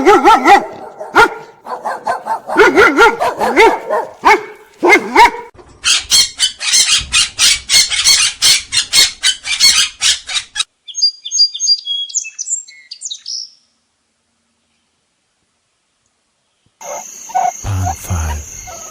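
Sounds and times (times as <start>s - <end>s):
birds squawking: 5.8s - 10.7s, 16.8s - 18.9s
high bird chirping: 5.9s - 13.6s.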